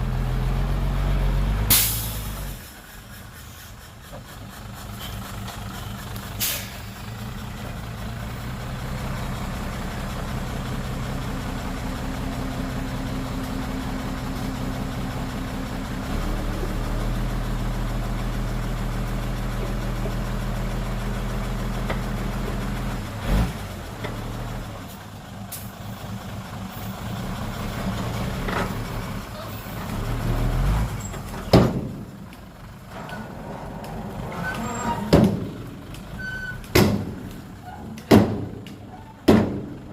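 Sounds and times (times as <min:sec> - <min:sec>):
diesel truck engine running: 0:00.0 - 0:39.9
sharp knocks: 0:36.7 - 0:37.2, 0:39.3 - 0:39.8.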